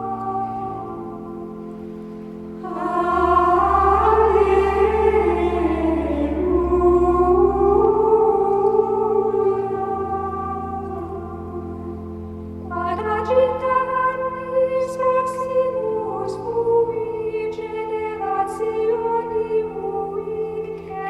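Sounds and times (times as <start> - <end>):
women's choir chanting: 2.6 - 11.7.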